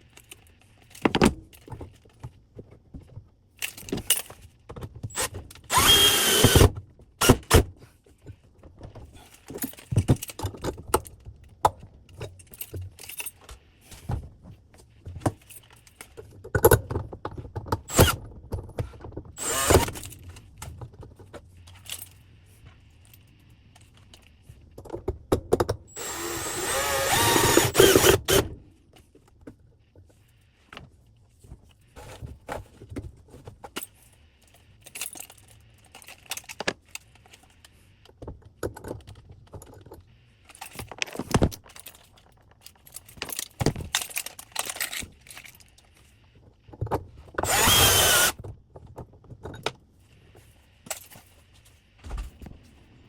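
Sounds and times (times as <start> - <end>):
power drill running: 5.2 - 6.7, 17.9 - 18.2, 19.4 - 20.0, 25.9 - 28.4, 47.4 - 48.4.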